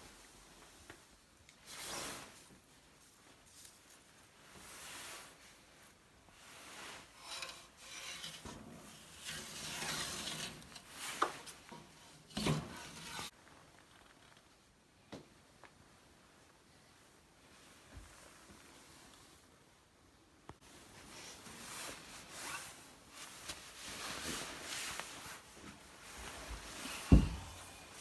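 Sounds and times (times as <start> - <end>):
gasket rope rubbing and scraping: 4.8 - 13.4.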